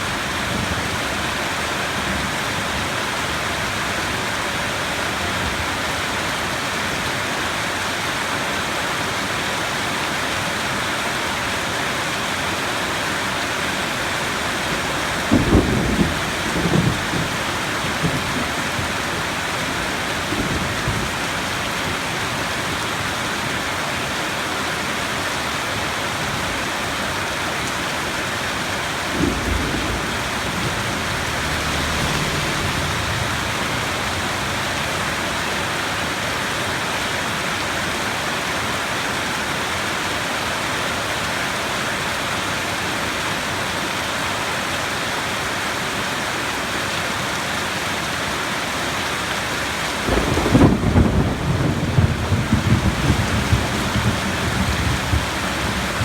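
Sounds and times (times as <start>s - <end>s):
heavy rain: 0.0s - 56.0s
thunder rumbling: 14.0s - 22.8s, 28.6s - 36.0s, 49.8s - 56.0s.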